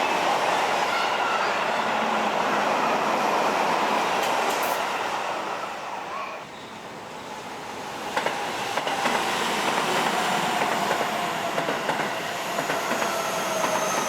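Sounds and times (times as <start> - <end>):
train wheels rumbling on rails: 7.8 - 14.0.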